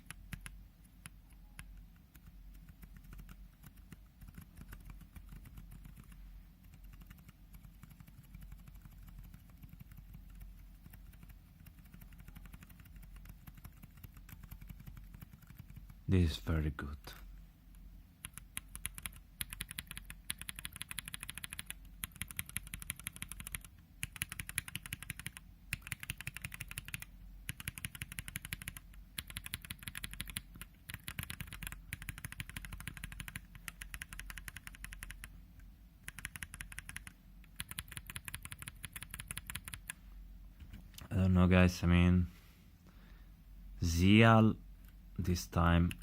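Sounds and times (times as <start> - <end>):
mechanical keyboard typing: 1.3 - 16.0, 18.2 - 35.3, 36.0 - 40.0, 45.7 - 46.0.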